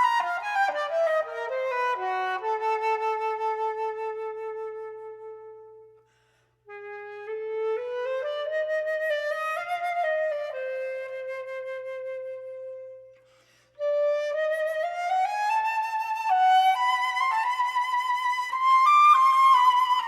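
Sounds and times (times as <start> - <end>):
solo flute playing: 0.0 - 6.1, 6.7 - 20.0
breath: 6.0 - 6.7, 13.1 - 13.8.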